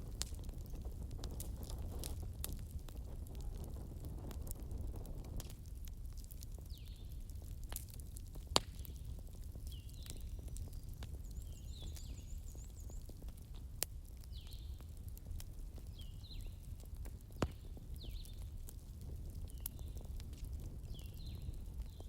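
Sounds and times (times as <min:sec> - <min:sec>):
campfire crackling and popping: 0:00.0 - 0:22.0.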